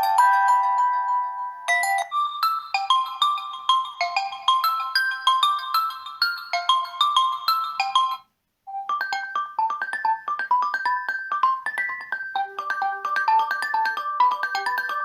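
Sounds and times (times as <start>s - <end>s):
phone ringtone melody: 0.0s - 15.0s.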